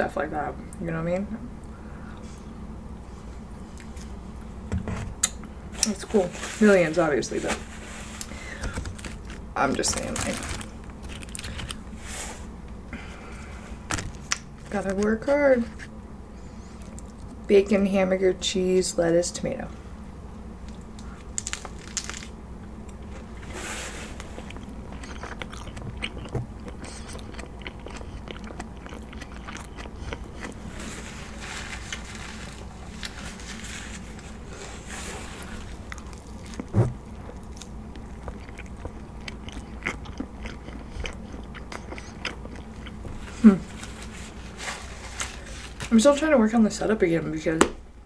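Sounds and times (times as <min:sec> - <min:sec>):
person chewing food: 0:22.8 - 0:33.3, 0:35.4 - 0:45.8.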